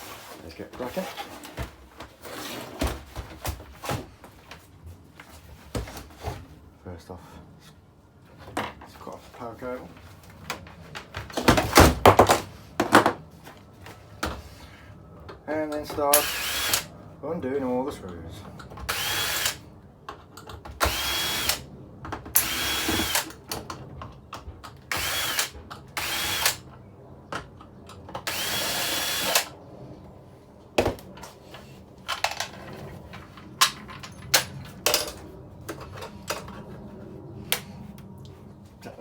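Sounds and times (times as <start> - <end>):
power drill whining: 16.1 - 16.9, 18.9 - 19.6, 20.8 - 21.6, 22.4 - 23.4, 24.9 - 26.6, 28.2 - 29.5.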